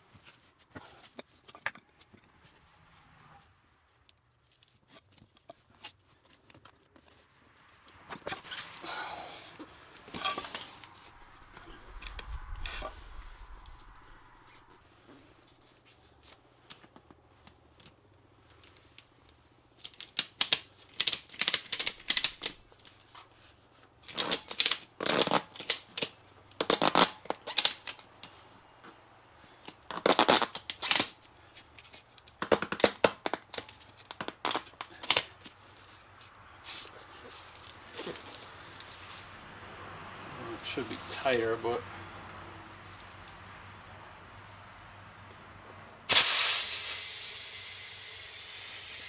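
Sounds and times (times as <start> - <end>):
strap ratchet rapid clicking: 19.8 - 22.6, 46.1 - 49.0.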